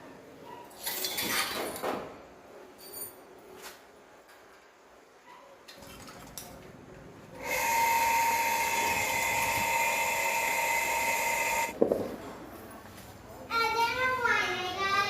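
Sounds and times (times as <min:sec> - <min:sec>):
electric device high-pitched whine: 0:07.4 - 0:11.8.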